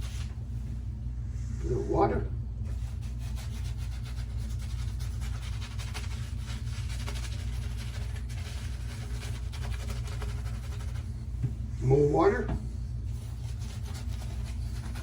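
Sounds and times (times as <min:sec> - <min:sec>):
shaving brush swishing lather: 0:00.0 - 0:00.7, 0:02.7 - 0:11.3, 0:12.8 - 0:15.0.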